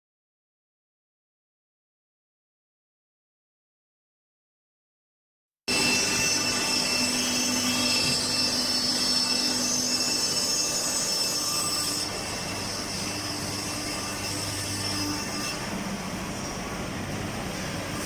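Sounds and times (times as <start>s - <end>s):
industrial machine with high whine: 5.7s - 18.0s.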